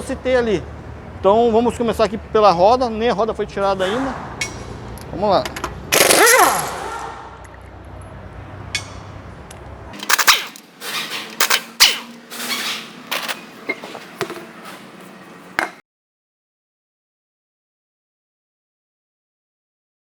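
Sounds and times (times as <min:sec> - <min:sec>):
metallic tool clanks and clicks: 0:04.4 - 0:06.7, 0:08.7 - 0:09.0, 0:10.0 - 0:10.6, 0:11.3 - 0:12.2.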